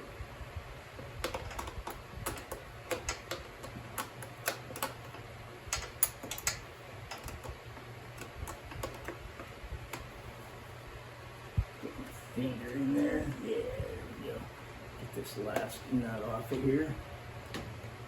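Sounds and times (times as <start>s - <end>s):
sharp metal clicks: 1.2s - 7.6s.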